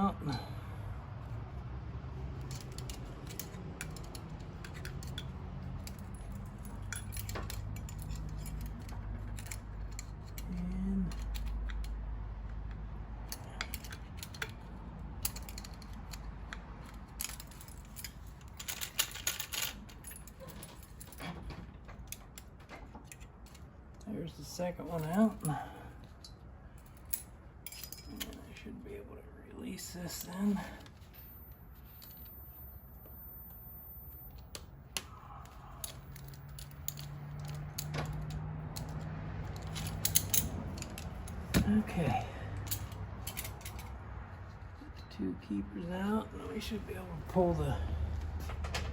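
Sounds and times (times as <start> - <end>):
low steady hum: 0.0 - 48.9
metallic clicks and scrapes: 2.1 - 24.0, 34.3 - 45.2.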